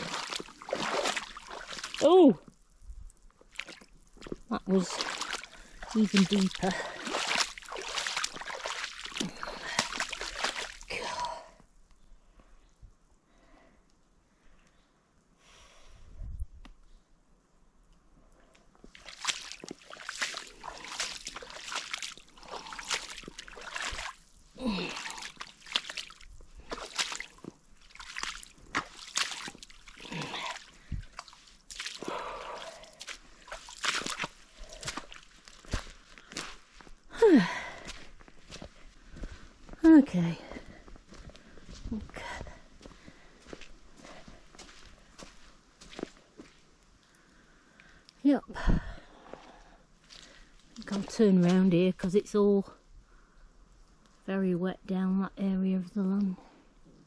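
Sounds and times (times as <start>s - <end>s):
boots wading through puddle water: 0.0s - 2.5s, 3.4s - 11.6s, 18.8s - 46.7s, 49.1s - 51.7s.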